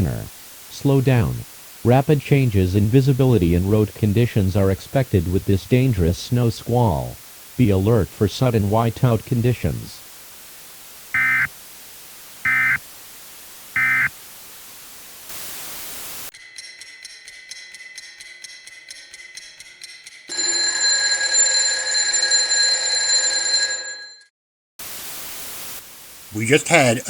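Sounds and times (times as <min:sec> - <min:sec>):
burst of static: 0:06.3 - 0:16.3, 0:24.8 - 0:27.0
high digital chirps: 0:11.2 - 0:11.5, 0:12.5 - 0:12.8, 0:13.8 - 0:14.1
multi-tone electronic ringing: 0:11.2 - 0:11.5, 0:12.5 - 0:12.8, 0:13.8 - 0:14.1, 0:20.3 - 0:24.3
rapid electronic ticking: 0:11.2 - 0:11.5.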